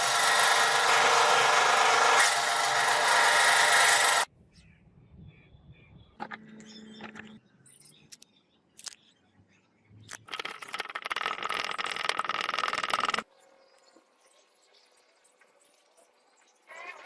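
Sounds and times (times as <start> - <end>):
power tool running: 0.0 - 4.3.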